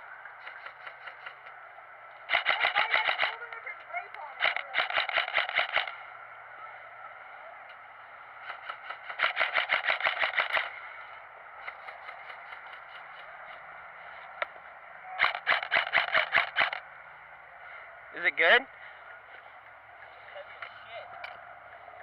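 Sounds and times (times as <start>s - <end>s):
airsoft guns firing bursts: 2.3s - 3.4s, 4.4s - 6.0s, 8.4s - 10.8s, 15.2s - 16.8s.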